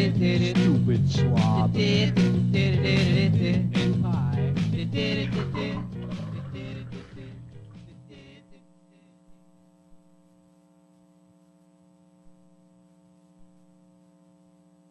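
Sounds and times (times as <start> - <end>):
faint electrical mains hum: 0.0 - 14.9.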